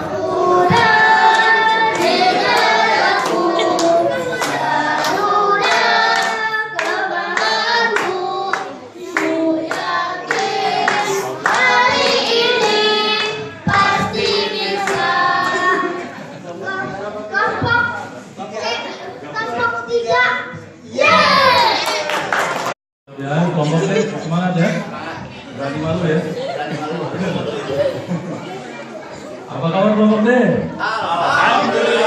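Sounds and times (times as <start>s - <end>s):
group singing a cheer: 0.0s - 16.5s, 30.8s - 32.0s.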